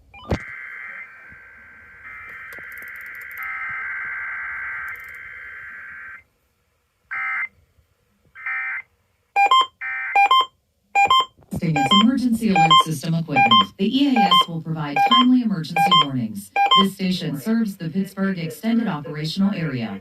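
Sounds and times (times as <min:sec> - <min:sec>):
sharp electronic beeps: 0:09.4 - 0:16.9.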